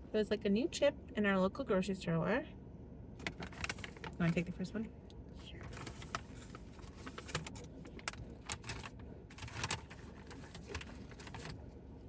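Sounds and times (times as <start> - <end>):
chip bag crinkling: 3.2 - 4.5, 5.6 - 11.7.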